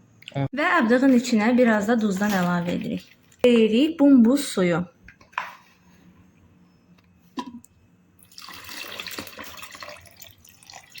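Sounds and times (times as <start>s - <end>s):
water pouring into a bowl: 8.2s - 11.0s.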